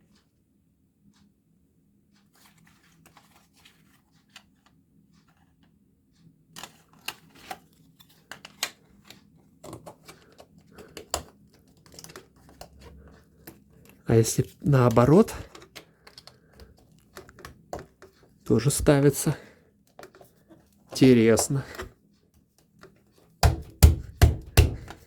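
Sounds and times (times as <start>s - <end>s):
plastic parts clicking and tapping: 6.5s - 19.3s, 19.9s - 25.0s.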